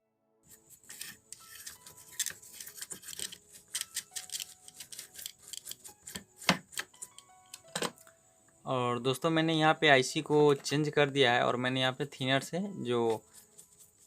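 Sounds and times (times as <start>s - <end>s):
small tools clicking and tapping: 0.9s - 8.1s.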